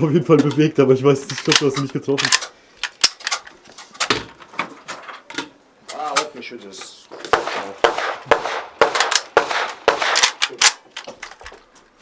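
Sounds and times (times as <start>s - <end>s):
rapid gunshots: 7.3s - 10.7s.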